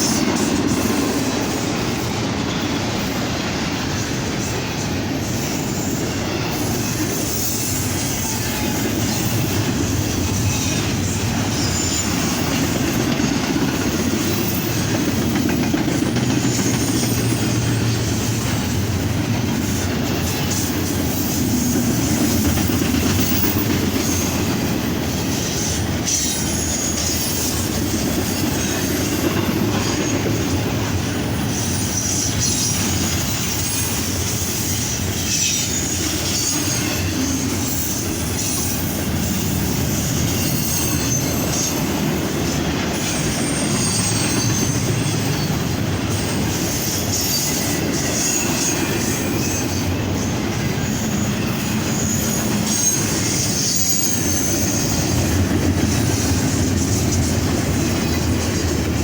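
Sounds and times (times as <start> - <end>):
train wheels rumbling on rails: 0.0 - 59.0
high-pitched wheel squeal: 43.0 - 45.6, 46.5 - 55.2.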